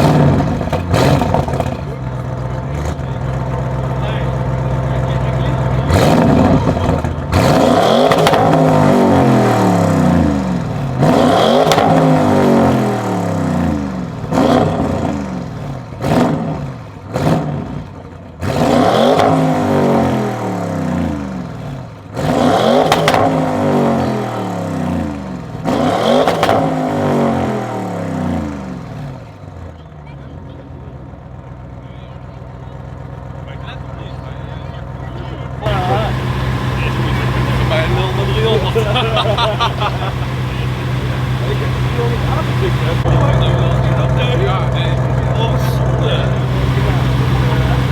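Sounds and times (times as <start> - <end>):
car engine revving: 0.0 - 29.7, 35.4 - 47.9
exhaust crackles and pops: 22.8 - 23.4, 35.6 - 45.7, 46.3 - 47.9.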